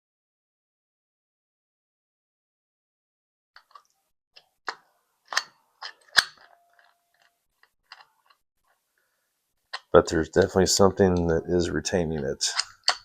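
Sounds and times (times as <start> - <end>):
padlock clicks and knocks: 4.7 - 8.4.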